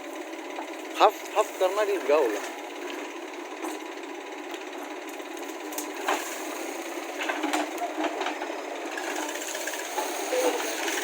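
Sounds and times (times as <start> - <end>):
backhoe engine running: 0.0 - 11.0.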